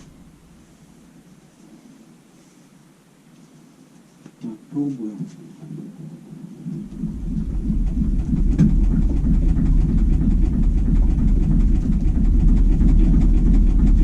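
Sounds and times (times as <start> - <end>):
low rumble with rapid ticking: 0.0 - 1.3, 6.0 - 14.0.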